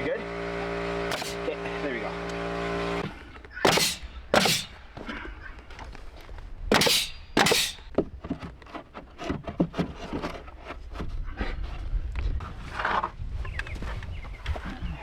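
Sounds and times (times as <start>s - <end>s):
fastening tool bursts: 1.1s - 1.5s, 3.7s - 4.9s, 6.7s - 7.9s.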